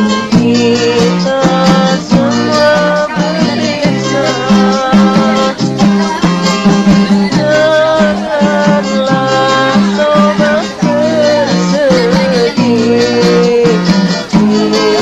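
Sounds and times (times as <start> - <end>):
acoustic guitar: 0.0 - 15.0
person singing: 0.0 - 15.0.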